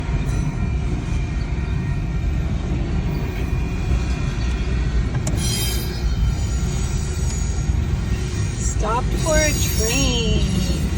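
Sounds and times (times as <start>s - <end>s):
train cars rumbling past: 0.0s - 10.9s
high-pitched wheel squeal: 5.2s - 10.9s.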